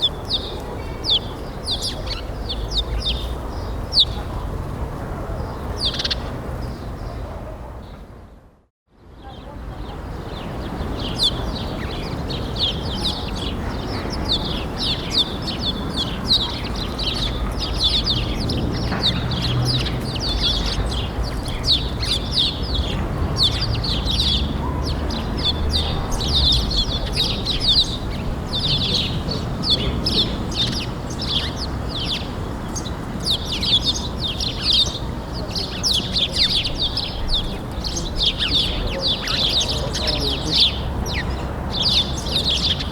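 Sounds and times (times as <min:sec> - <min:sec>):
small birds chirping: 0:00.0 - 0:08.2, 0:09.2 - 0:42.9.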